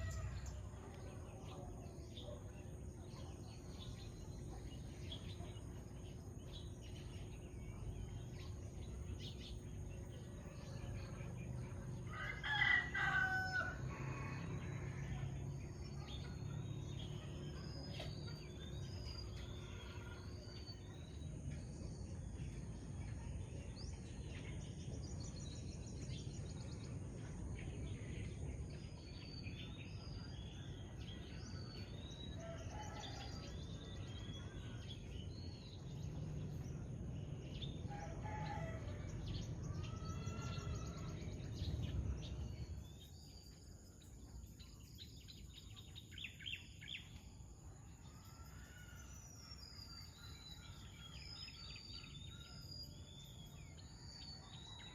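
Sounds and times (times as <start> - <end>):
rooster crowing: 12.0 - 15.3, 37.9 - 41.1
steady low rumble: 40.7 - 45.2.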